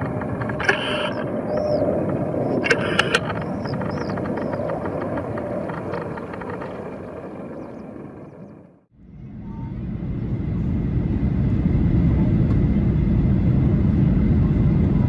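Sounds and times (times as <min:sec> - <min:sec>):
sharp clicks: 0:00.0 - 0:07.3
aircraft engine noise: 0:00.0 - 0:15.0
faint chirps: 0:00.4 - 0:08.6.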